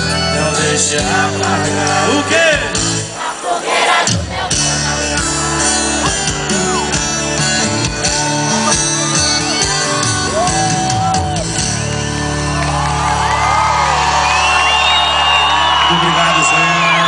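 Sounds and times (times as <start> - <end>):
drums: 0.0 - 17.0
live band playing: 0.0 - 17.0
crowd shouting and whooping: 1.0 - 17.0.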